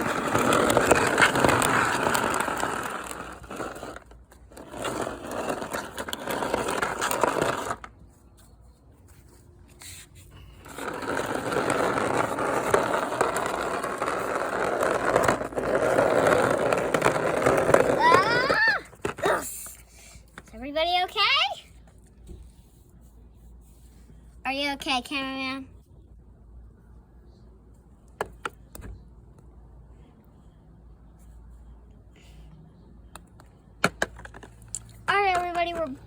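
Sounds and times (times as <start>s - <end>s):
rough scraping: 0.0s - 8.0s, 9.8s - 19.6s.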